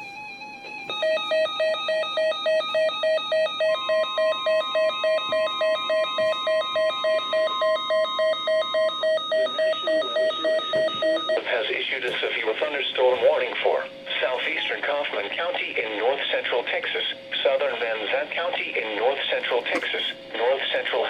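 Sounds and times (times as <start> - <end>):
electronic beeping: 0.0 - 11.8
steady warning alarm tone: 0.0 - 19.8.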